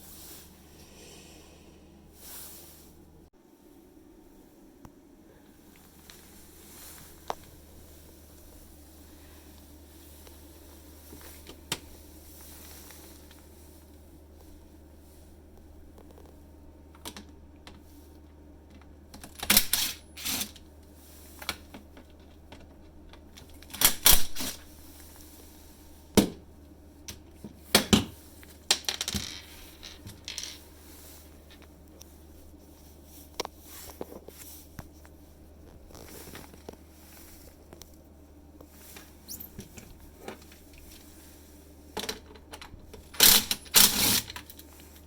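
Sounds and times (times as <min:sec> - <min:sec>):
low steady hum: 0:00.0 - 0:45.0
small parts and tools clattering: 0:27.7 - 0:30.7, 0:42.0 - 0:45.0.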